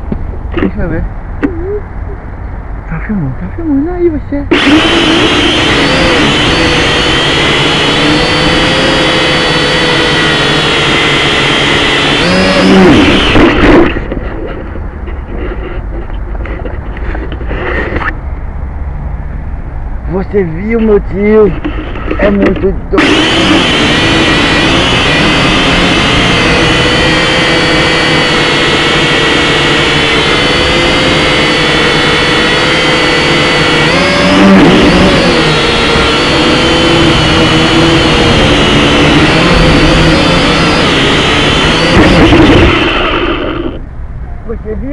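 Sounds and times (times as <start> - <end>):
jet engines roaring: 4.5 - 15.4, 21.5 - 44.0.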